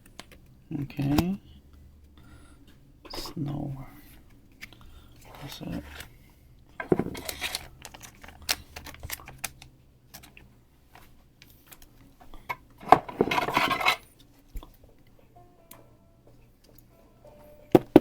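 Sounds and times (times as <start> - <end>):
cards clicking and tapping: 6.8 - 10.4, 17.8 - 18.0.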